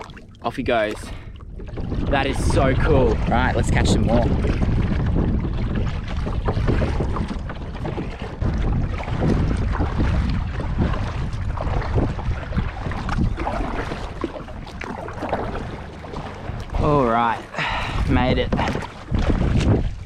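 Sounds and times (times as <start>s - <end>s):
paddle splashes and knocks: 0.0s - 20.0s
water rushing: 0.0s - 20.0s
wind buffeting microphone: 0.0s - 20.0s.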